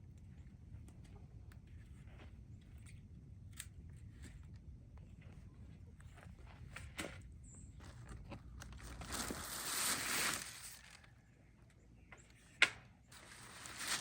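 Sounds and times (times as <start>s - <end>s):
rustling scraping noise: 8.8s - 11.0s, 13.1s - 14.0s.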